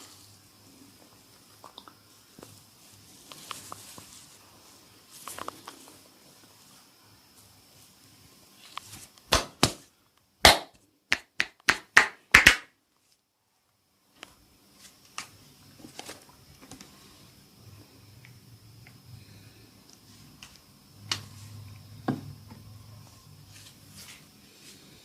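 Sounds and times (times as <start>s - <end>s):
faint rustling: 0.0s - 9.1s
hand slapping a head: 9.3s - 9.8s, 10.4s - 12.7s.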